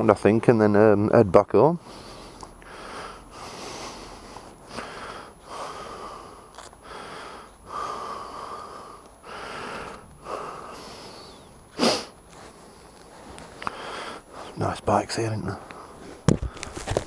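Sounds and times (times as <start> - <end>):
person breathing: 1.8 - 14.6, 15.5 - 17.0
sharp breath puff: 9.4 - 12.2.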